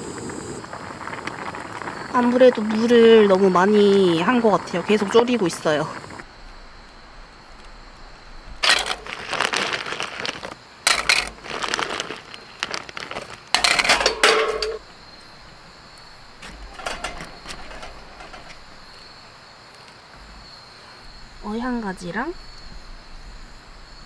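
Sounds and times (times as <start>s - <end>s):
crickets chirping: 0.0s - 24.0s
dishes and utensils clinking: 10.9s - 11.6s, 13.6s - 15.5s, 16.3s - 19.0s.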